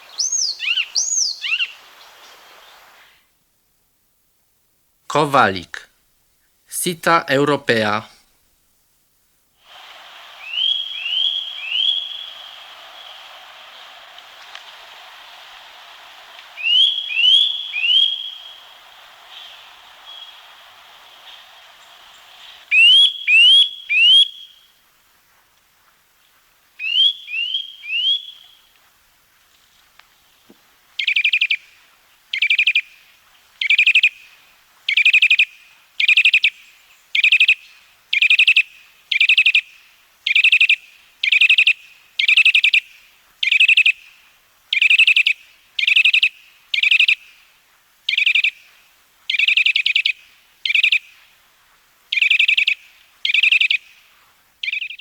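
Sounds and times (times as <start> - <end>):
bird whistling and trilling: 0.1 - 1.8, 10.4 - 12.5, 16.6 - 18.6, 22.7 - 24.6, 26.8 - 28.5.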